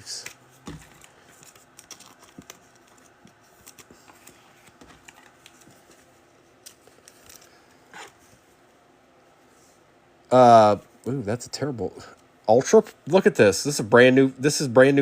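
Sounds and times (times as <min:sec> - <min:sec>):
cards and plastic packaging rustling: 0:00.0 - 0:08.2.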